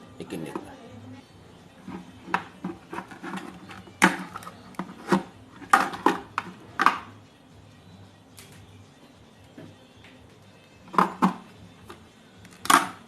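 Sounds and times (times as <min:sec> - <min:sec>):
tools clicking and knocking: 0:10.9 - 0:11.4.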